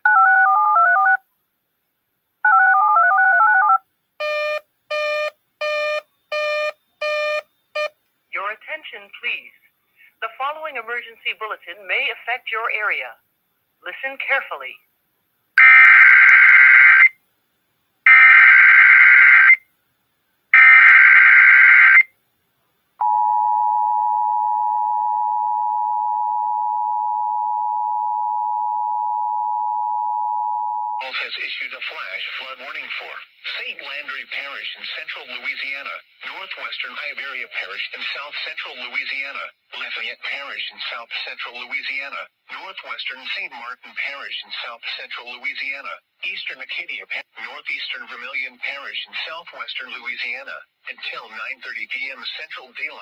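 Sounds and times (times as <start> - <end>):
touch-tone beeps: 23.0 - 31.0.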